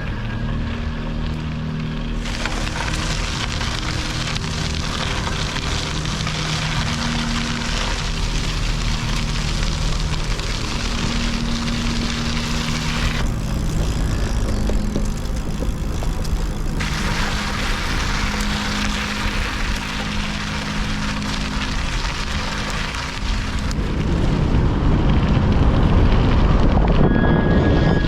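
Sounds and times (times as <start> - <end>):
low hum shifting in pitch: 0.0 - 25.1, 26.1 - 28.0
bike tyres rumbling on gravel: 0.0 - 28.0
wind on microphone: 23.2 - 28.0.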